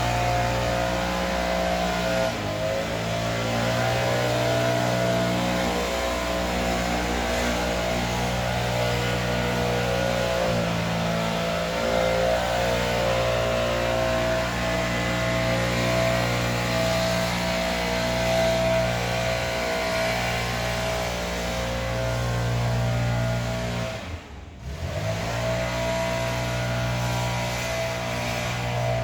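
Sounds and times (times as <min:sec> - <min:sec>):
leaf blower engine running: 0:00.0 - 0:29.0.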